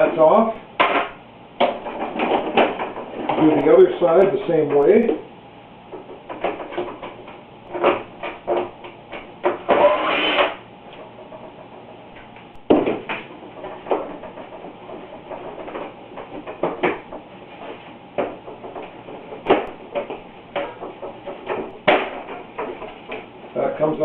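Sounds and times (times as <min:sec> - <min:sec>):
plastic panel scraping rattle: 0:00.8 - 0:05.0, 0:12.9 - 0:23.3.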